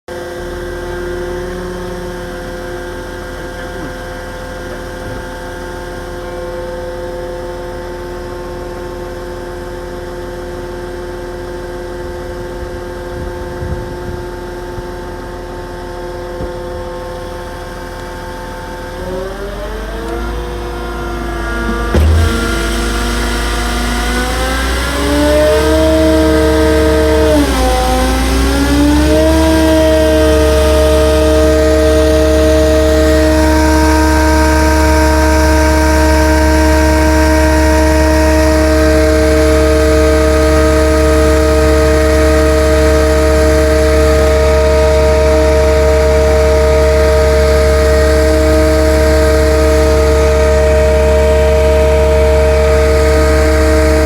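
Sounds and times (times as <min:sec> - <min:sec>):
engine knock: 0:00.1 - 0:08.2, 0:21.6 - 0:54.0
truck diesel engine revving: 0:00.2 - 0:07.6, 0:17.0 - 0:54.0.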